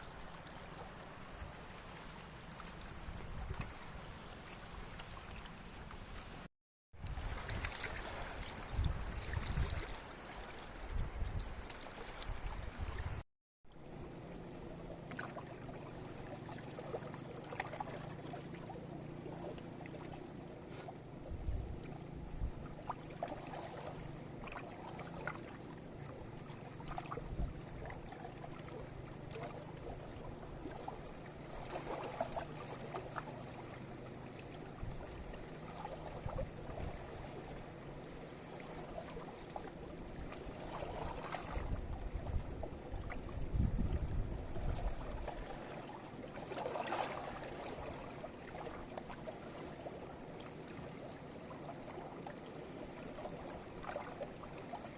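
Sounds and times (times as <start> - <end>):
river water flowing: 0.0 - 54.9
wind buffeting microphone: 8.4 - 9.9, 10.8 - 13.2, 21.2 - 22.7, 27.2 - 27.8, 41.5 - 45.5.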